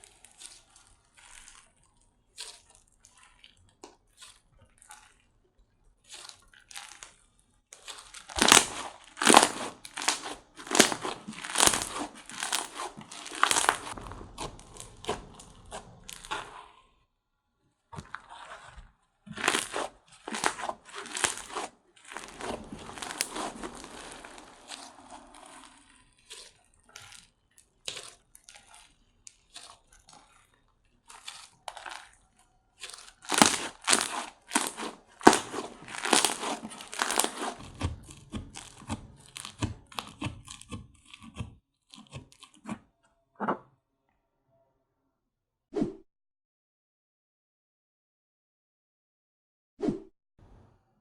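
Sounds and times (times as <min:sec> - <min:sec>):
slime crackling and popping: 0:00.0 - 0:05.2, 0:06.0 - 0:16.7, 0:18.0 - 0:41.3.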